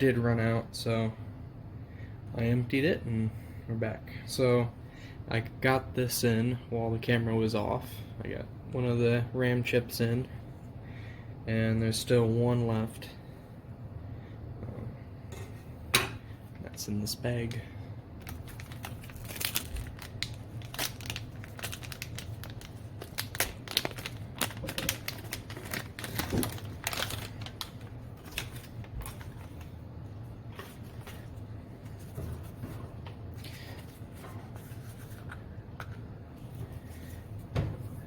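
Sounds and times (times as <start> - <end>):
steady low hum: 0.0 - 38.0
plastic bag crackling: 18.2 - 29.8.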